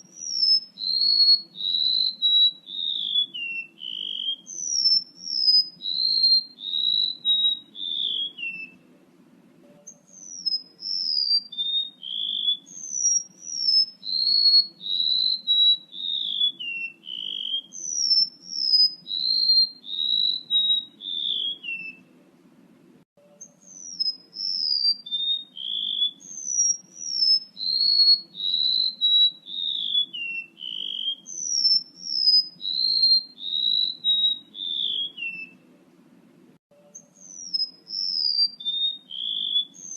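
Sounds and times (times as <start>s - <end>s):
high whistled bird song: 0.0s - 8.9s, 9.7s - 22.2s, 23.2s - 35.7s, 36.8s - 39.9s
faint low hum: 1.5s - 11.1s, 19.8s - 24.6s, 34.5s - 38.0s.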